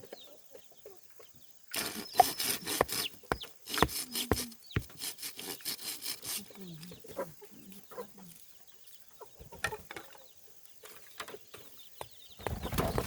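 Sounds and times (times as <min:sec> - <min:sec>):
chickens clucking: 0:00.0 - 0:13.0
sharp taps and knocks: 0:01.8 - 0:05.0.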